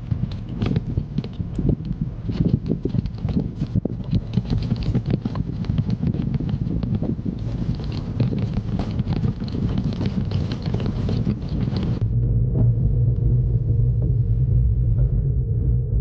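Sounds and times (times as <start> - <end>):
skateboard rattling on road: 0.0 - 12.0
wind buffeting microphone: 0.0 - 16.0.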